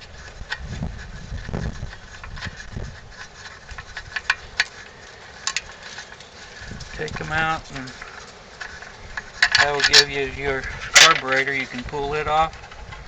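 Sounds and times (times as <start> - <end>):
low rumbling handling noise: 0.0 - 13.0
clicks and knocks of hand tools: 1.9 - 10.1.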